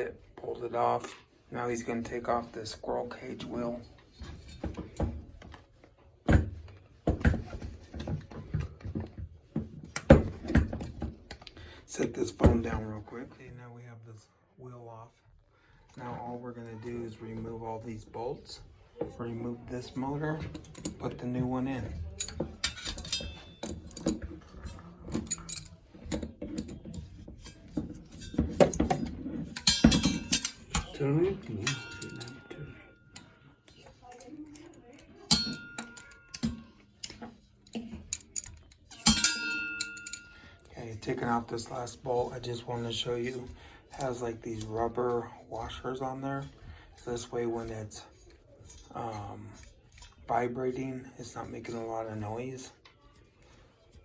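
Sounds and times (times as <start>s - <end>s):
metallic clinks of tools on sheet metal: 22.1s - 24.2s, 27.4s - 37.2s, 38.1s - 40.7s.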